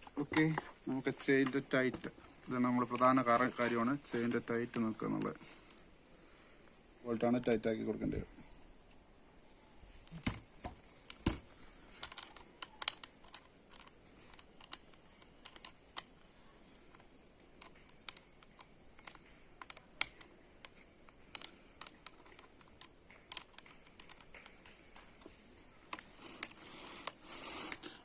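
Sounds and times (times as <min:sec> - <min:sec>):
chain clicking and tapping: 0:17.6 - 0:25.4.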